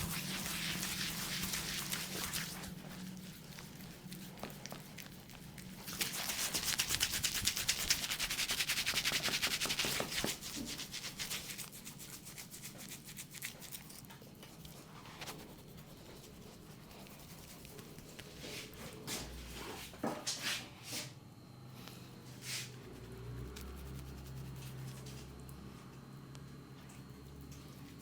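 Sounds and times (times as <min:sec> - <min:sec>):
hands rubbing hair: 0:00.0 - 0:19.2, 0:22.4 - 0:25.3.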